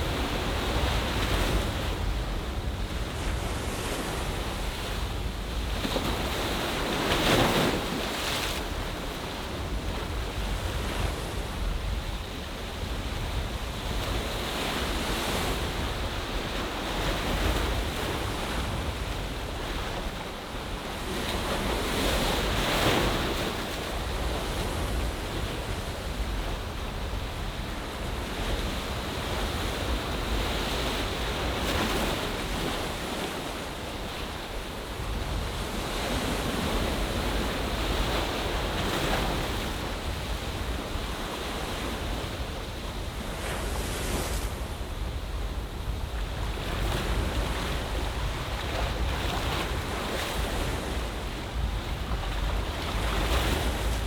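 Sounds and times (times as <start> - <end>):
wind rumble on microphone: 0.0 - 54.0
ocean waves washing in: 42.0 - 49.0.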